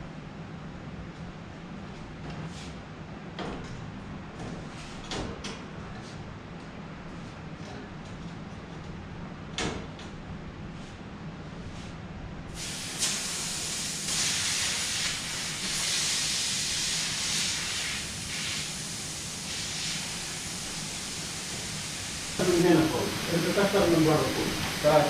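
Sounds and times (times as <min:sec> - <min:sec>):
gas hissing: 0:12.6 - 0:25.0.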